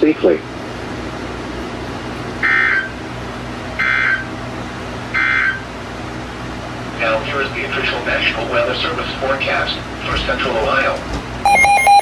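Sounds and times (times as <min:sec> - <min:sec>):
steady low hum: 0:00.0 - 0:12.0
digital tone bursts: 0:11.5 - 0:12.0.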